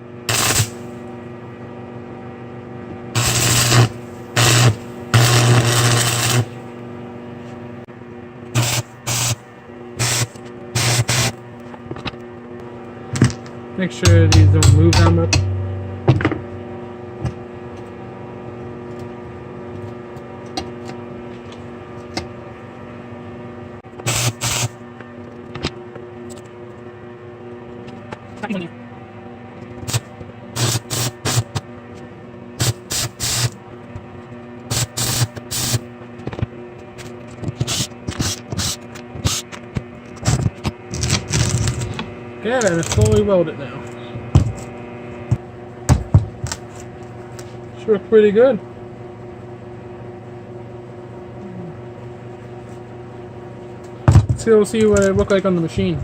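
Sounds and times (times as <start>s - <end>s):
welder electrical hum: 0.0s - 56.0s
welding arc crackle: 0.3s - 0.9s, 3.2s - 6.6s, 8.6s - 9.4s, 10.0s - 11.3s, 24.1s - 24.7s, 30.6s - 31.5s, 32.6s - 33.6s, 34.7s - 35.8s, 40.3s - 42.0s, 42.6s - 43.2s
electric welder humming: 0.3s - 1.0s, 3.1s - 6.7s, 8.6s - 9.4s, 10.0s - 11.3s, 14.0s - 17.1s, 24.1s - 24.7s, 29.8s - 31.6s, 32.6s - 33.6s, 34.7s - 35.8s.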